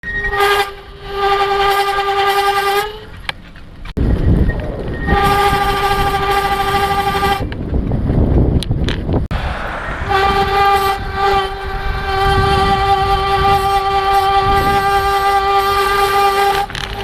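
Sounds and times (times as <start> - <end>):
disc brake squealing: 0.0 - 0.5, 4.2 - 5.8.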